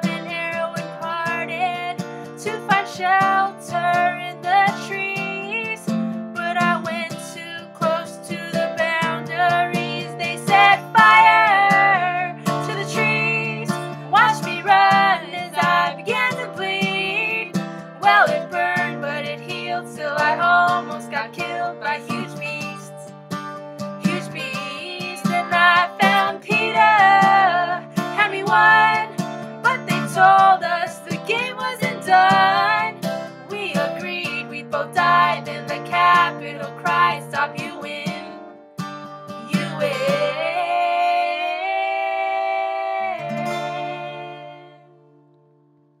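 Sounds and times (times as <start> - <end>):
woman singing: 0.0 - 23.1, 24.0 - 38.5, 39.4 - 44.9
guitar accompaniment: 0.0 - 45.9.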